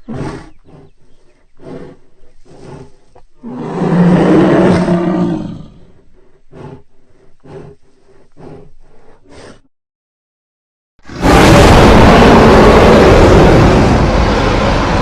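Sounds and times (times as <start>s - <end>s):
monster roar: 3.4s - 5.8s, 11.1s - 15.0s.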